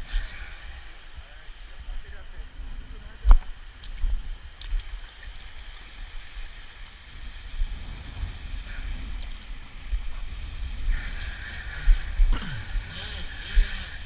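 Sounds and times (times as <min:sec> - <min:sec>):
gusty low rumble: 0:07.1 - 0:14.0.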